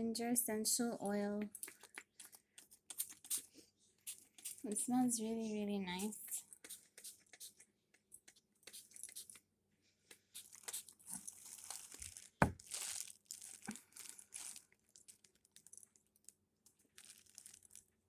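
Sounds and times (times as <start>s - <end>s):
packaging rustling and crinkling: 10.4s - 18.0s.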